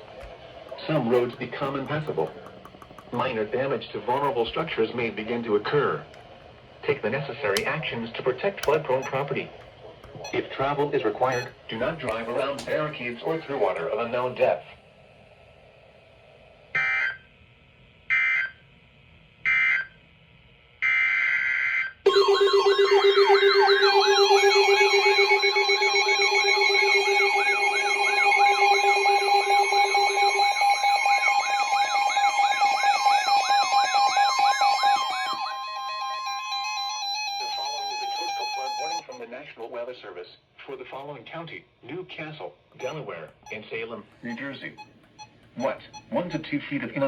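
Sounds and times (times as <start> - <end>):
steady tones: 0.0 - 14.9
digital data tones: 8.9 - 9.4, 10.1 - 12.3, 22.1 - 39.3, 42.8 - 47.0
warbling siren-like alert tone: 22.1 - 39.2.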